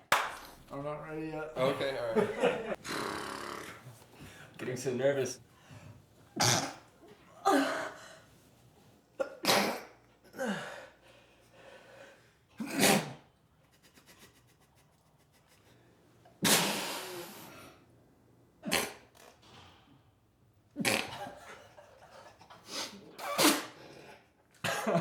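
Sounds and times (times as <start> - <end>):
person stifling sneezes: 6.4 - 6.8, 12.6 - 13.3, 16.4 - 17.8, 18.6 - 19.2, 22.7 - 24.2.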